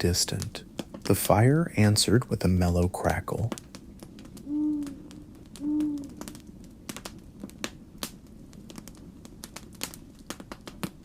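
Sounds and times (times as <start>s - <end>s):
log fire crackling: 0.0s - 11.0s
owl hooting: 4.4s - 6.4s.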